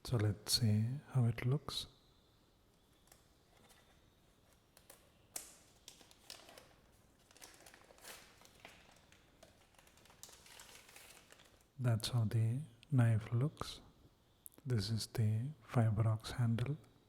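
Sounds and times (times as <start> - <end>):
soft handling rustles: 2.7 - 11.8.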